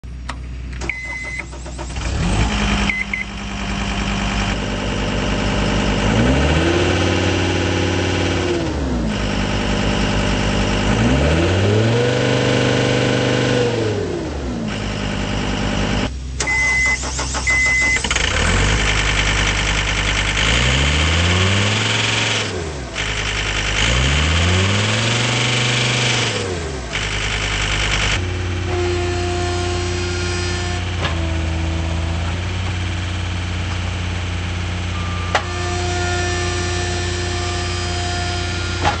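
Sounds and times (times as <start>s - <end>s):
diesel engine revving: 0.0s - 39.0s
short electronic beeps: 0.8s - 1.6s, 2.8s - 3.4s, 16.4s - 18.1s, 34.9s - 35.6s.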